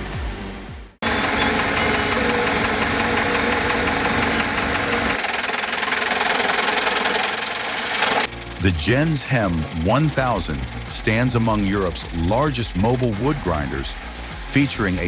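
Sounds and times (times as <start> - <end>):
background music: 0.0 - 1.0, 8.3 - 15.0
wood chipper running: 1.0 - 15.0.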